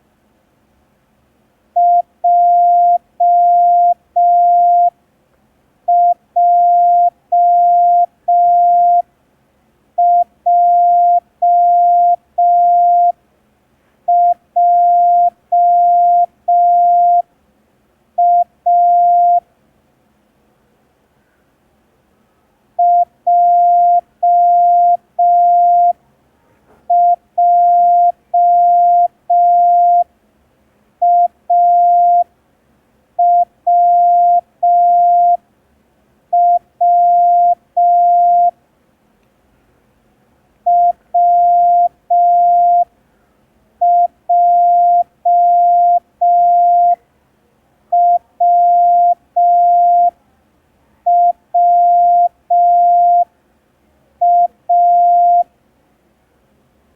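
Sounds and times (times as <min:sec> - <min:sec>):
morse code beeps: 0:01.8 - 0:04.9, 0:05.9 - 0:09.0, 0:10.0 - 0:13.2, 0:14.1 - 0:17.2, 0:18.2 - 0:19.4, 0:22.8 - 0:26.0, 0:26.9 - 0:30.1, 0:31.0 - 0:32.2, 0:33.2 - 0:35.4, 0:36.4 - 0:38.6, 0:40.7 - 0:42.9, 0:43.8 - 0:47.0, 0:48.0 - 0:50.1, 0:51.1 - 0:53.3, 0:54.2 - 0:55.5.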